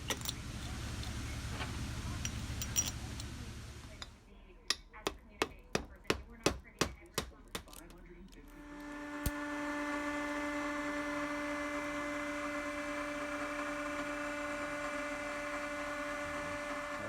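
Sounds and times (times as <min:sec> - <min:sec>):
electric motor humming: 0:07.8 - 0:17.0.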